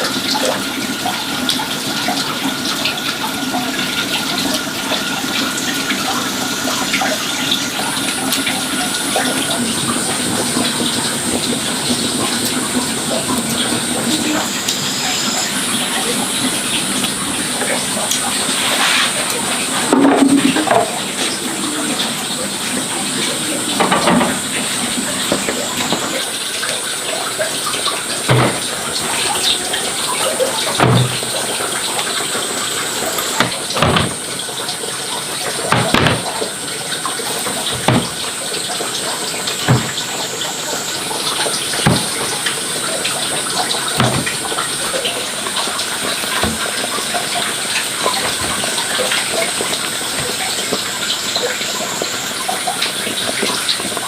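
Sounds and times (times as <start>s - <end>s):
running water rushing: 0.0s - 54.0s
dull knocks: 28.2s - 29.1s, 30.8s - 31.3s, 33.4s - 34.4s, 35.7s - 36.4s, 37.7s - 38.4s, 39.6s - 40.2s, 41.8s - 42.4s, 44.0s - 44.5s, 46.4s - 46.8s.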